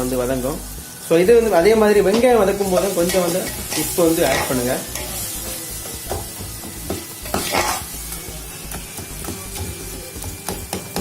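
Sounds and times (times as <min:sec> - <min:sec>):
food sizzling in a pot: 0:00.0 - 0:11.0
spoon scraping a pot: 0:07.2 - 0:07.9.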